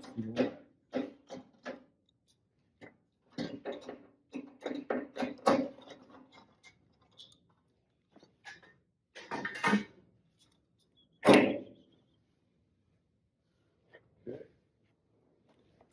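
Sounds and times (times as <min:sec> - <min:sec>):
knocks and clatter of metal tools: 0:00.0 - 0:02.0, 0:02.8 - 0:07.4, 0:08.1 - 0:10.6.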